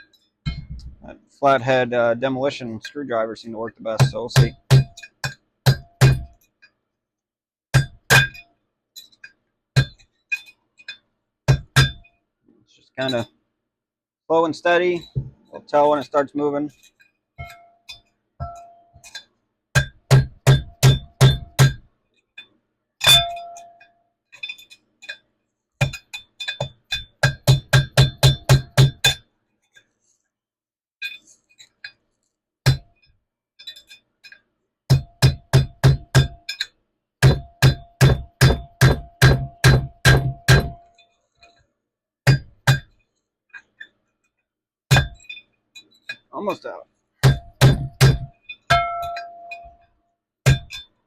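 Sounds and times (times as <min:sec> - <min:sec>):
hammer striking metal: 0:04.0 - 0:06.4, 0:07.7 - 0:08.4, 0:09.8 - 0:12.1, 0:17.4 - 0:21.8, 0:23.0 - 0:23.8, 0:34.9 - 0:40.9, 0:47.2 - 0:49.8.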